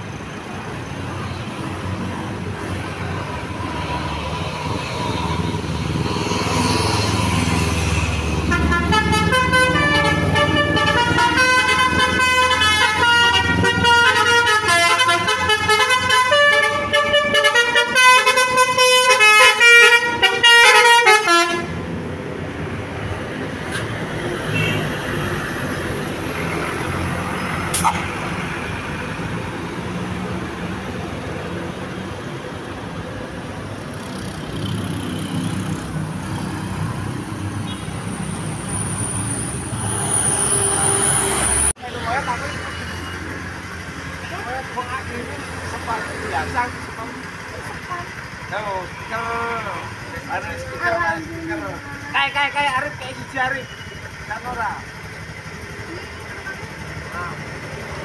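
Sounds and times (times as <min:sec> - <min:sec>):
traffic noise: 0:00.0 - 0:58.0
vehicle engine: 0:00.0 - 0:58.0
musical air horn playing a tune: 0:08.5 - 0:21.7.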